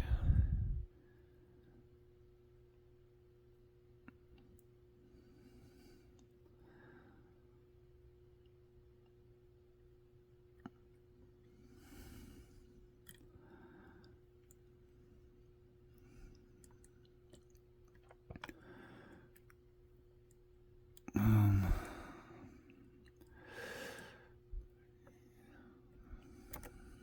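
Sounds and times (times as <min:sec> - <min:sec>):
person breathing: 0:00.0 - 0:00.9, 0:21.2 - 0:22.5, 0:23.3 - 0:24.4
person sighing: 0:21.1 - 0:22.4.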